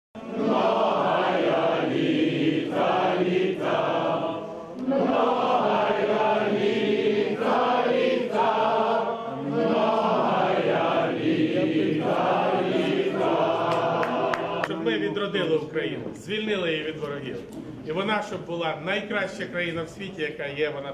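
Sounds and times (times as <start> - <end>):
group of voices singing: 0.2 - 15.2.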